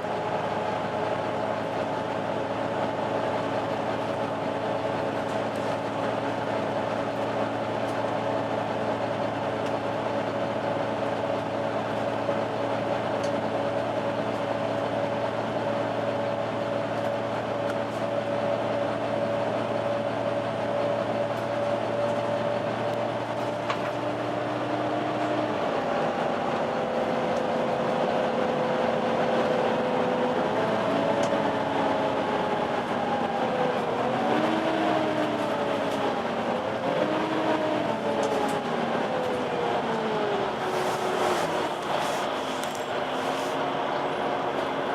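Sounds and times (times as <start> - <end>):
bus engine running: 0.0 - 44.9.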